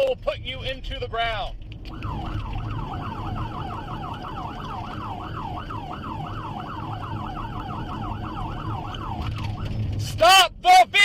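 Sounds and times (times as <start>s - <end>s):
steady low rumble: 0.0s - 11.0s
police siren yelping: 1.9s - 10.2s.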